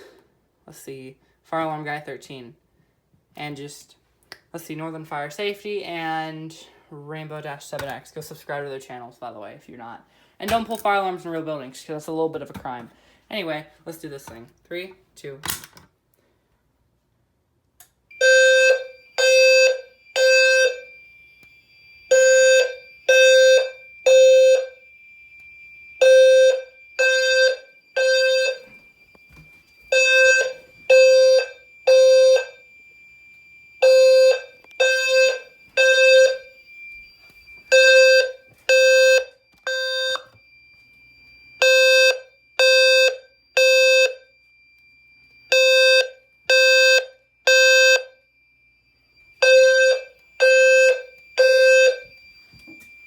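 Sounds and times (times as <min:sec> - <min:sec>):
fire alarm low buzzy tones: 0:18.1 - 0:53.0
faint high-pitched tone: 0:48.2 - 0:53.0.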